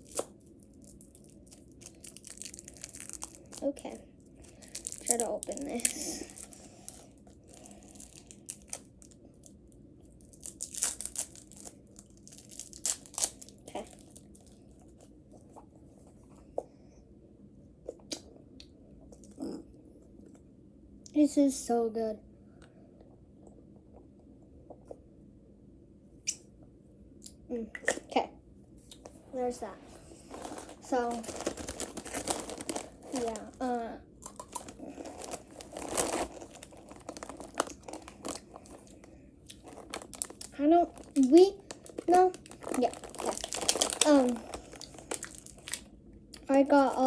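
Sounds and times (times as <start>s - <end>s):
snack packaging crinkling: 0.0s - 15.2s, 29.9s - 47.0s.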